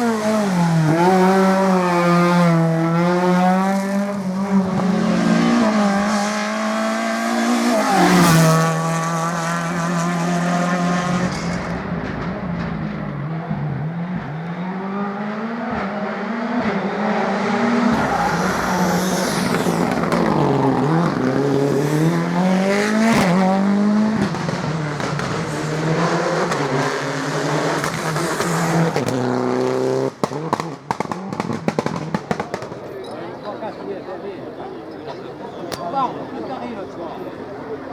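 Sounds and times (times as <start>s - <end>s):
car engine accelerating hard: 0.0s - 37.9s
sharp cracks: 30.2s - 33.1s.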